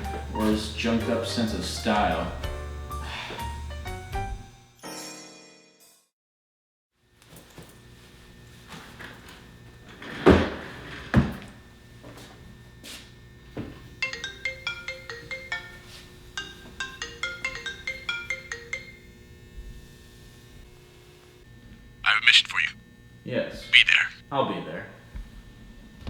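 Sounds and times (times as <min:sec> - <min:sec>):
phone ringtone melody: 0:14.0 - 0:19.2.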